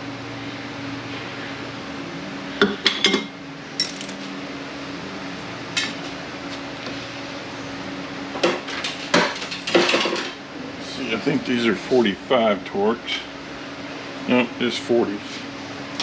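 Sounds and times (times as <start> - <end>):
steady low hum: 0.0 - 16.0
metal tools clinking: 3.8 - 4.2.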